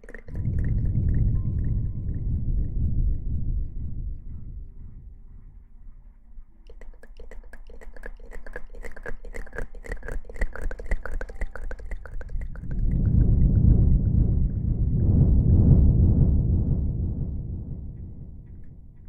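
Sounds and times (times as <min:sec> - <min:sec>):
rapid light clicks: 0:00.0 - 0:01.8, 0:06.4 - 0:14.3
rubbing against microphone: 0:05.9 - 0:14.8.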